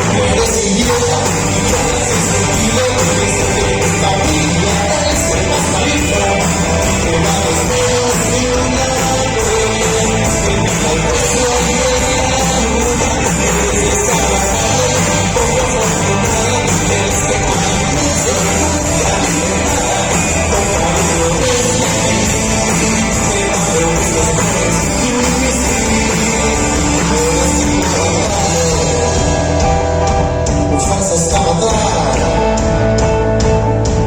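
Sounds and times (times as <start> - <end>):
person singing: 0.0 - 33.0
electric guitar: 0.0 - 34.0
rock band playing live: 0.0 - 34.0.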